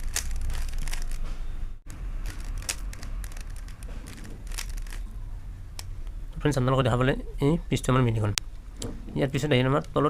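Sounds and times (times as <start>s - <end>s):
puzzle cube plastic clicks: 0.0s - 1.2s, 2.2s - 5.0s.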